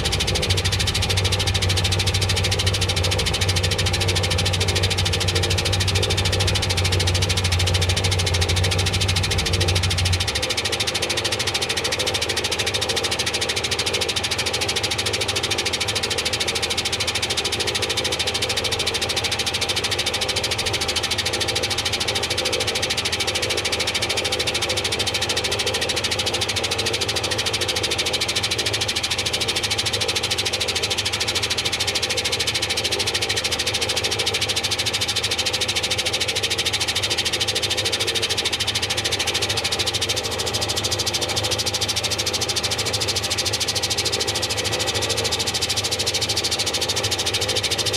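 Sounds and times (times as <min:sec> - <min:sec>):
washing machine running: 0:00.0 - 0:47.9.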